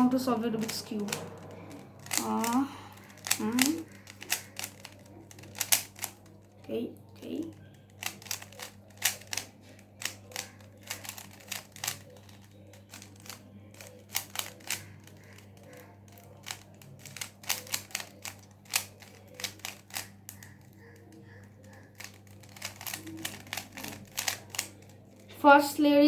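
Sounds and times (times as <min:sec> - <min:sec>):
steady low hum: 0:00.0 - 0:25.8
puzzle cube clicking: 0:00.6 - 0:06.5, 0:07.4 - 0:25.3.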